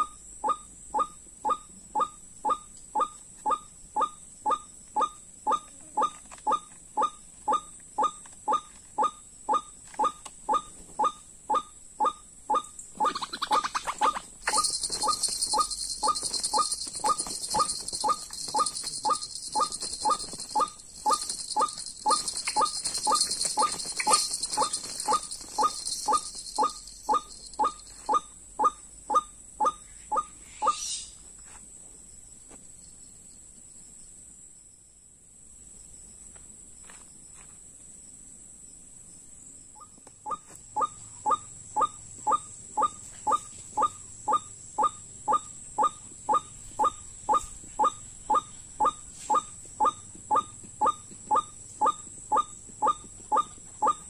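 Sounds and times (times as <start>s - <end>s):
waterhen calling: 13.0s - 27.8s
high shrill insect buzz: 13.0s - 28.2s.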